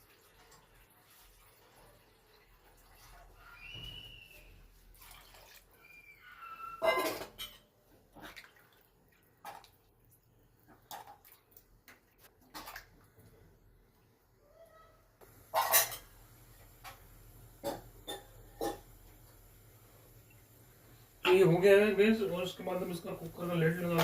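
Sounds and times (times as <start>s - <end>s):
water splashing: 4.8s - 5.8s, 8.1s - 13.4s.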